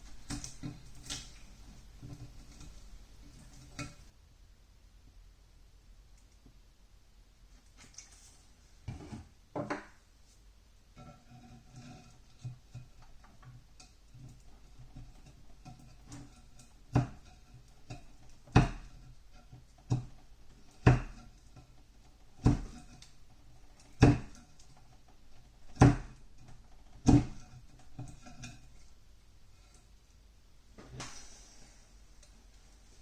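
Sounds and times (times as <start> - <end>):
faint background hum: 0.0 - 33.0.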